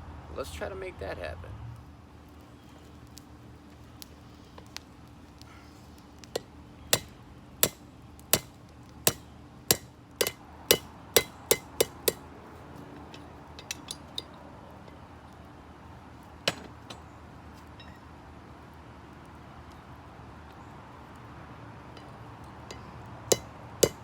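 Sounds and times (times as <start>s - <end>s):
hammer striking metal: 6.4s - 7.8s, 9.1s - 12.2s, 13.0s - 14.4s, 16.5s - 17.0s, 22.7s - 24.0s.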